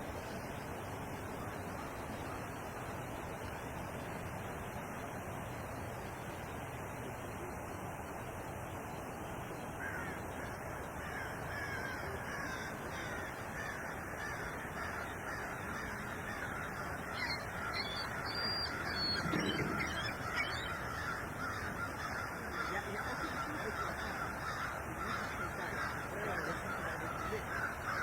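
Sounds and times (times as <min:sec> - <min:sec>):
birds calling: 0:09.8 - 0:28.0
wind noise: 0:17.5 - 0:22.1.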